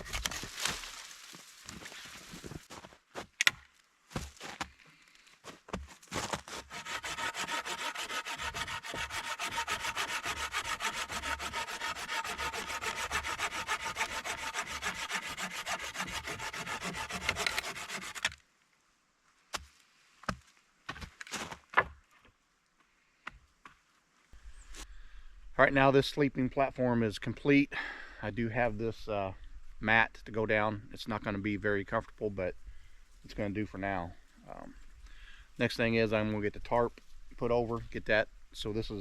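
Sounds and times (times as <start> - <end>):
hand saw cutting sapling: 6.5 - 18.4.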